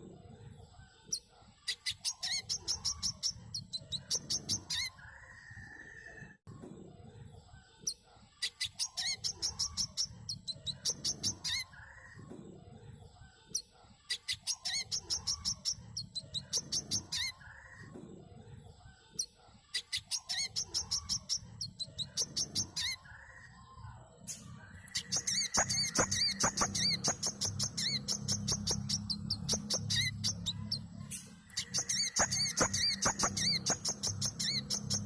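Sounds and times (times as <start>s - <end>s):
bird chirping song: 0.0s - 35.0s.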